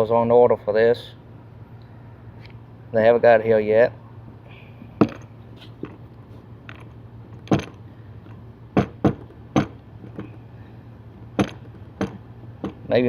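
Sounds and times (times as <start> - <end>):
metallic clicks and knocks: 5.0 - 6.0, 6.6 - 10.4, 11.4 - 12.9.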